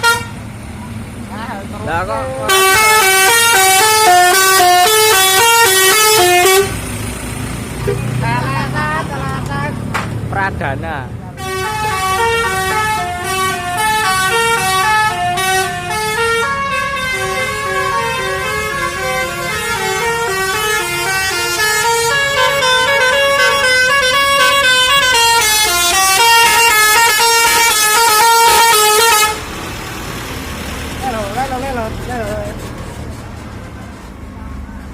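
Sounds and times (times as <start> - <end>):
musical bus horns playing melodies: 0.0 - 0.6, 1.9 - 7.1, 11.4 - 30.0.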